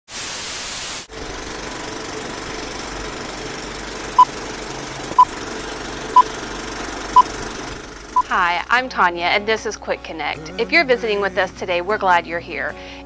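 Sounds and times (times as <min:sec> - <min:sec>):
static hiss: 0:00.1 - 0:01.1
steady electronic hum: 0:01.1 - 0:08.8.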